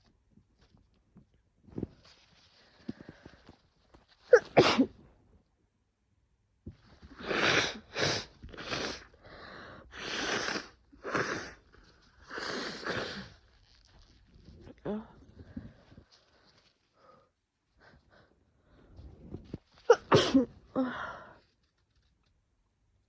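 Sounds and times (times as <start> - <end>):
person sneezing: 4.3 - 4.9, 19.9 - 21.0.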